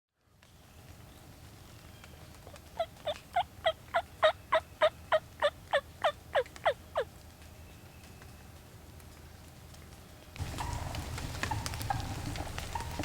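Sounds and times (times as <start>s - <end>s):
turkey yelps: 2.5s - 7.1s, 10.5s - 13.0s.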